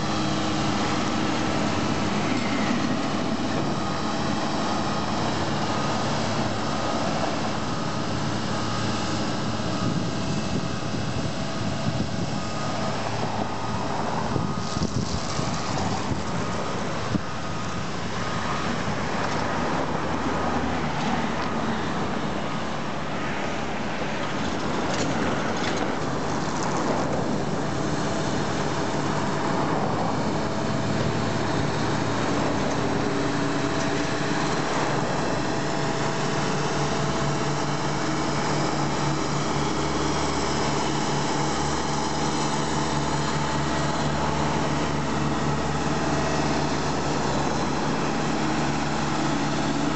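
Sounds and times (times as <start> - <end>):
heavy machinery engine drone: 0.0 - 49.9.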